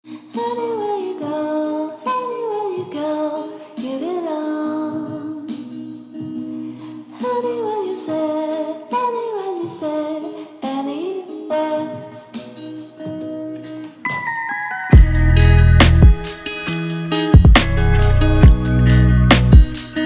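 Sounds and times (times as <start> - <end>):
woman singing song: 0.0 - 14.6.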